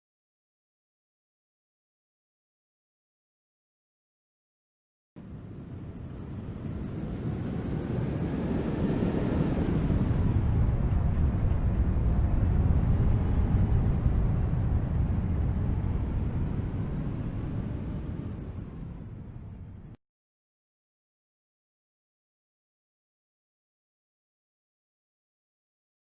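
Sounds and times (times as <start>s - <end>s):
aircraft engine passing by: 5.2s - 20.0s.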